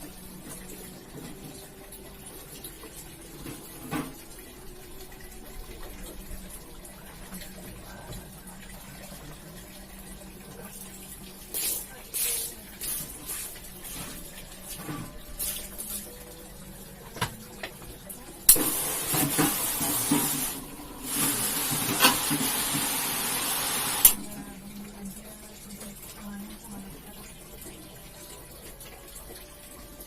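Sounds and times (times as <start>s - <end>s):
water spraying onto carpet: 11.5s - 13.5s.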